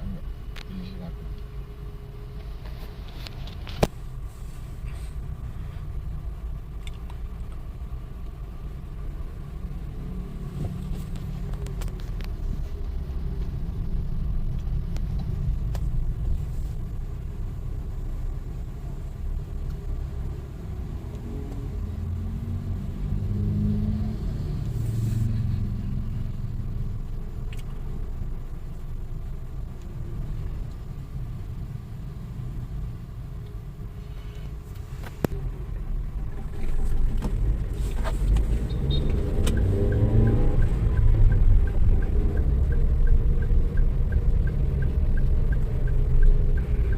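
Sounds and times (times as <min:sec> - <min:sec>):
car engine and road rumble: 0:00.0 - 0:46.9
light regular ticking: 0:38.3 - 0:46.9.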